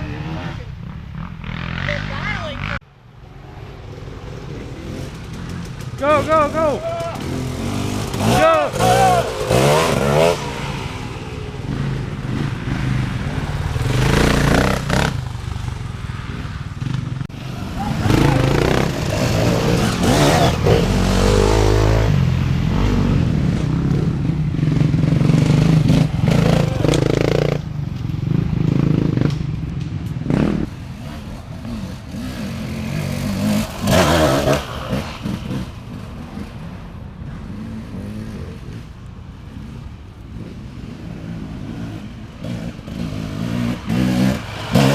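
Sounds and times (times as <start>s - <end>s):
dirt bike engines revving: 0.0s - 44.9s.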